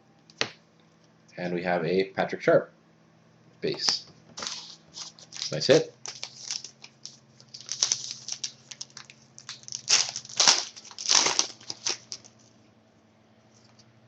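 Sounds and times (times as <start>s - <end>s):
crinkling packaging rustles: 4.4s - 12.6s.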